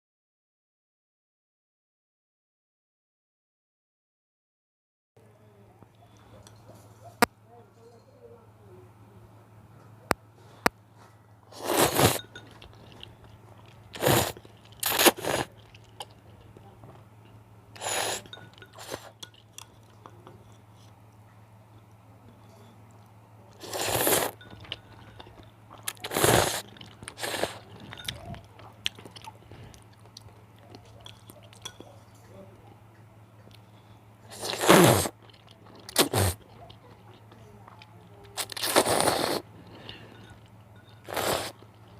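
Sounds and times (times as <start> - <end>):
faint low hum: 5.2 - 41.9
close eating mouth noises: 11.5 - 21.0, 21.7 - 41.9.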